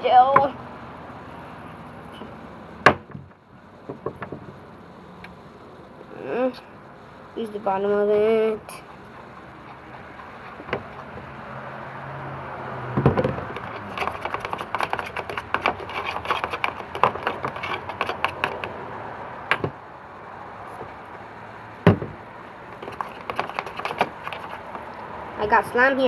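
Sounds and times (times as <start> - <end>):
sharp knocks: 2.2 - 4.6, 12.9 - 18.8, 19.5 - 19.8, 21.8 - 22.2.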